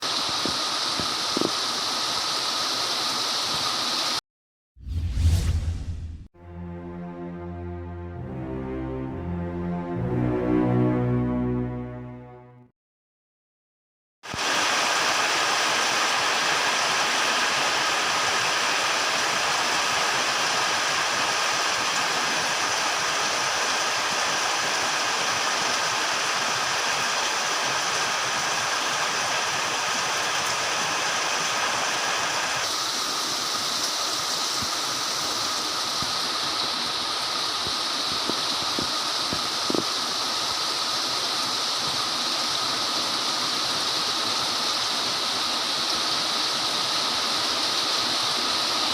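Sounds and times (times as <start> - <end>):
torrential rain pouring: 0.0 - 4.2, 14.2 - 48.9.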